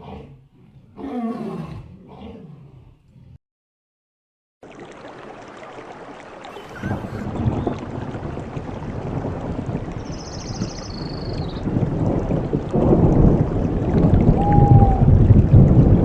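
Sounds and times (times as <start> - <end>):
rushing splashing water: 4.6 - 16.0.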